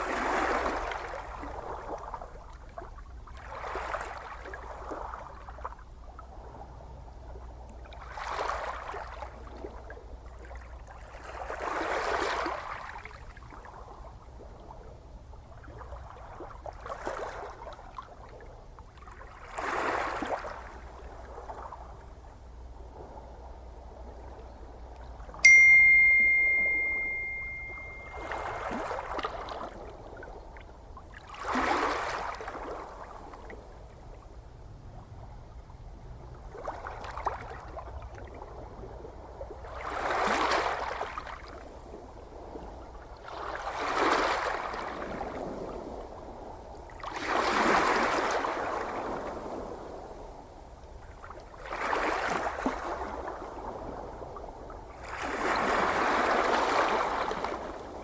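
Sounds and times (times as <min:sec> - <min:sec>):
ocean waves washing in: 0:25.4 - 0:29.7.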